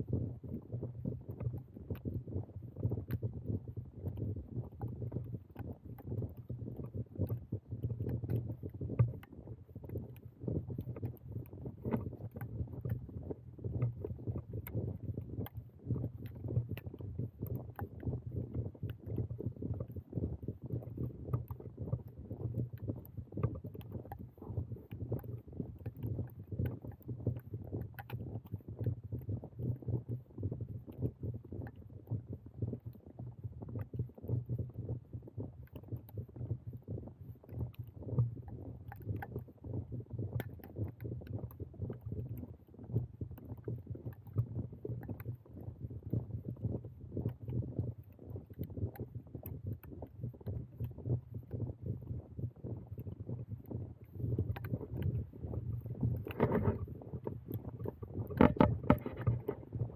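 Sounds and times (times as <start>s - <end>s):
small irregular ticks and knocks: 0.0s - 59.9s
small crunches and ticks: 54.4s - 59.9s
wind buffeting microphone: 54.7s - 59.9s.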